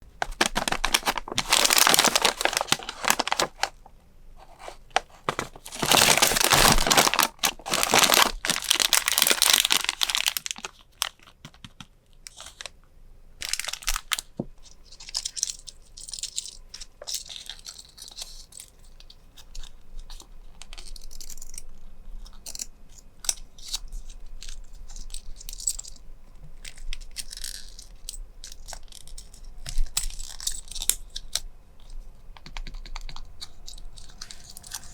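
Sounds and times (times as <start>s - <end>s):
packaging tearing and crinkling: 0.0s - 3.8s, 4.4s - 11.6s, 13.4s - 14.3s
rustling and handling: 0.0s - 12.7s, 13.4s - 21.0s, 23.7s - 34.9s.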